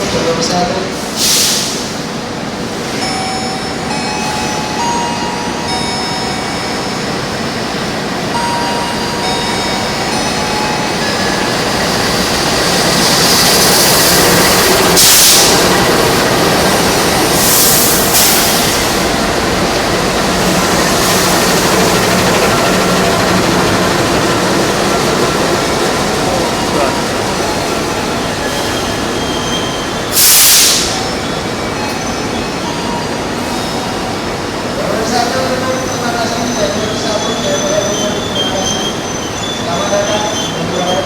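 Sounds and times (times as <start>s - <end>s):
train rushing noise: 0.0s - 41.0s
train wheels rumbling on rails: 0.0s - 41.0s
high wheel squeals: 21.1s - 34.3s, 35.4s - 41.0s.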